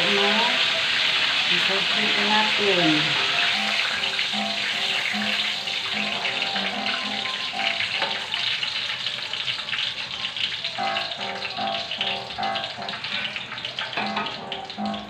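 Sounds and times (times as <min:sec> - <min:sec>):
music of short repeated notes: 0:03.2 - 0:08.0.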